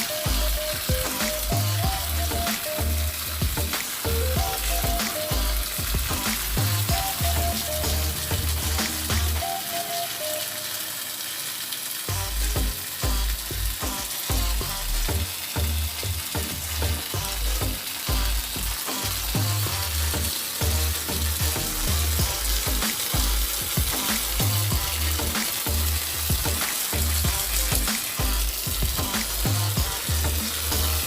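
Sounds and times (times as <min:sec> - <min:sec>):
music with deep bass line: 0:00.0 - 0:09.5, 0:12.1 - 0:31.0
crackling hiss: 0:00.0 - 0:31.0.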